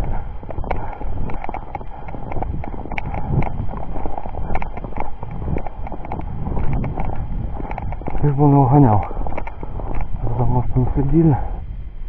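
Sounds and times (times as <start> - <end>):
footsteps crunching in snow: 0.0 - 11.6
steady low rumble: 0.0 - 12.0.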